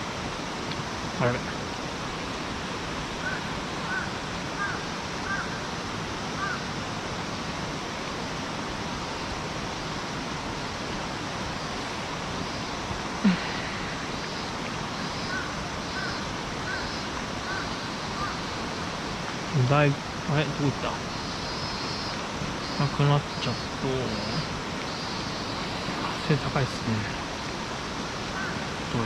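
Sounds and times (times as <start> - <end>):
rushing mountain stream: 0.0 - 29.0
faint high chirps: 20.6 - 26.8.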